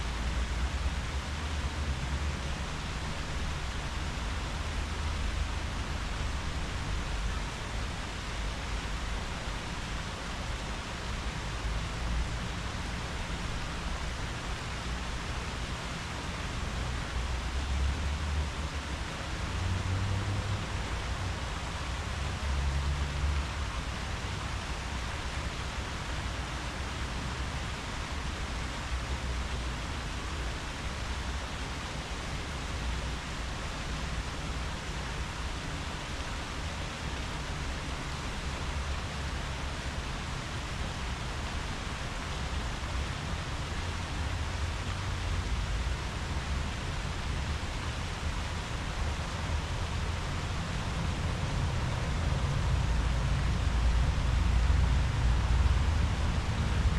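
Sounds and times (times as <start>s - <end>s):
wind through tree leaves: 0.0s - 56.9s
wind rumble on microphone: 36.6s - 56.9s.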